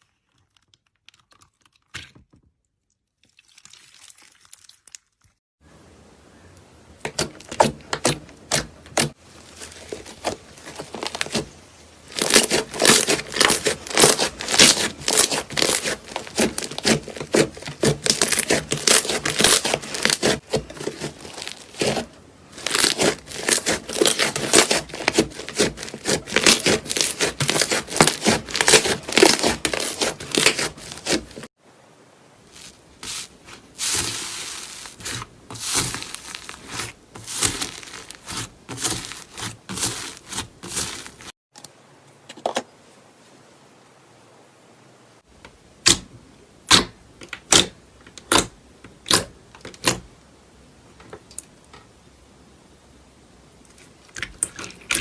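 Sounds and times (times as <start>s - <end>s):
slime crackling and popping: 12.1s - 31.4s, 32.6s - 41.3s, 48.3s - 50.0s
soft crinkly hiss: 31.6s - 41.3s.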